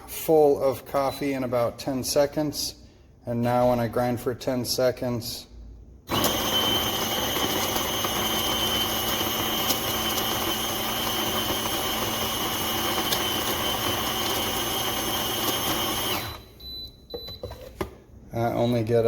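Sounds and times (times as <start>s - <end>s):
coffee grinder motor whining: 6.1s - 16.5s.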